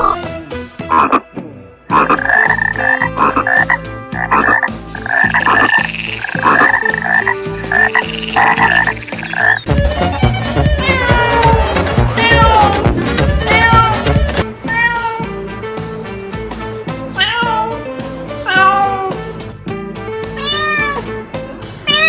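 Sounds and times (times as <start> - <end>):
animal calling: 1.9 - 14.1.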